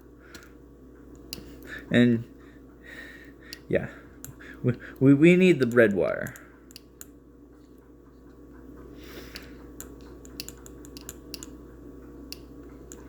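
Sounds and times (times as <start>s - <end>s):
steady low hum: 0.0s - 13.0s
small parts and tools clicking: 9.3s - 11.6s.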